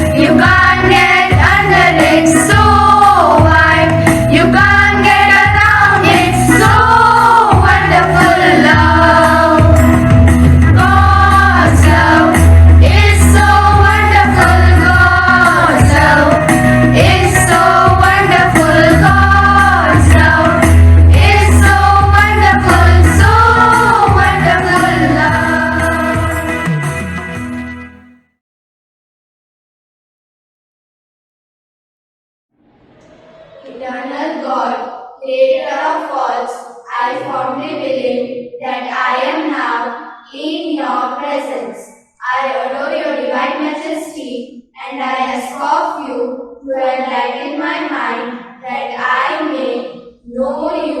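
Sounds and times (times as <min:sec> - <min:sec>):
women singing prayer song: 0:00.0 - 0:10.0, 0:10.6 - 0:26.3, 0:33.7 - 0:40.2, 0:41.0 - 0:51.0
instrumental accompaniment with bass: 0:00.0 - 0:28.3.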